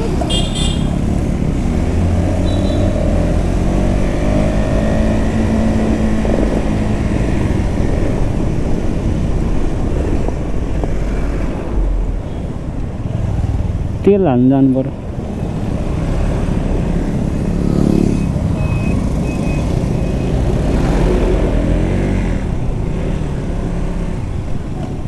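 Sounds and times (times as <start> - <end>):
motorcycle engine running: 2.4 - 10.5
wind rumble on microphone: 3.1 - 14.0.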